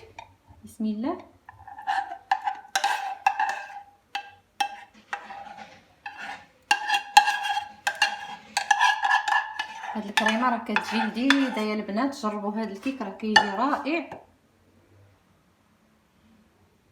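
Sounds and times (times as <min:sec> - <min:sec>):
spoon scraping metal pot: 0:01.4 - 0:14.2.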